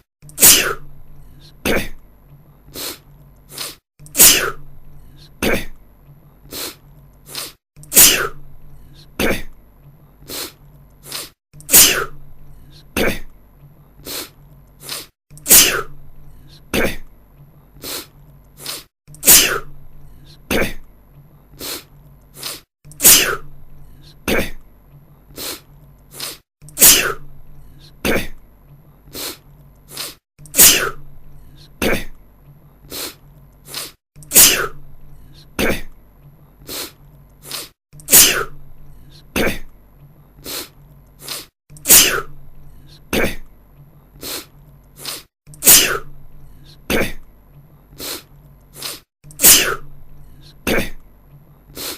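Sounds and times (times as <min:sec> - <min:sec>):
man sneezing: 0:00.4 - 0:00.8, 0:01.6 - 0:02.0, 0:03.6 - 0:04.6, 0:05.4 - 0:05.7, 0:07.4 - 0:08.4, 0:09.2 - 0:09.5, 0:11.1 - 0:12.2, 0:13.0 - 0:13.3, 0:14.9 - 0:15.9, 0:16.7 - 0:17.0, 0:18.7 - 0:19.7, 0:20.5 - 0:20.8, 0:22.5 - 0:23.5, 0:24.3 - 0:24.6, 0:26.3 - 0:27.2, 0:28.0 - 0:28.4, 0:30.0 - 0:31.0, 0:31.8 - 0:32.1, 0:33.7 - 0:34.8, 0:35.6 - 0:35.9, 0:37.5 - 0:38.6, 0:39.4 - 0:39.6, 0:41.3 - 0:42.3, 0:43.1 - 0:43.4, 0:45.1 - 0:46.1, 0:46.9 - 0:47.2, 0:48.8 - 0:49.9, 0:50.6 - 0:51.0.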